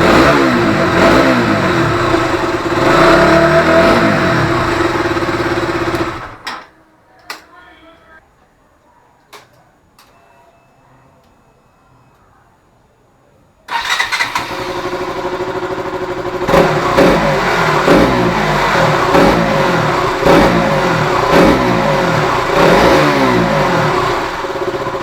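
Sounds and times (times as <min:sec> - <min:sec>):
motorcycle engine idling and revving: 0:00.0 - 0:06.4, 0:13.7 - 0:25.0
motorcycle engine starting: 0:00.0 - 0:06.5, 0:13.7 - 0:25.0.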